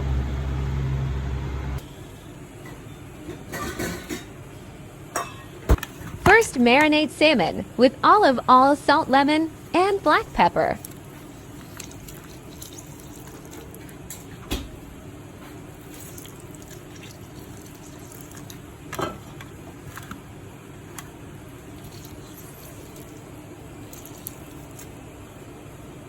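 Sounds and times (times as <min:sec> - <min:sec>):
steady background hum: 0:00.0 - 0:26.0
faint liquid sounds: 0:09.6 - 0:14.3, 0:15.7 - 0:19.0, 0:21.5 - 0:25.0.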